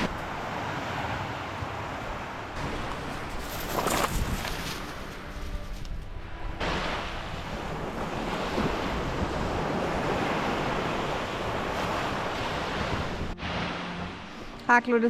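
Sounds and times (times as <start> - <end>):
wind on microphone: 0.0 - 14.6
surf washing onto beach: 6.6 - 14.4.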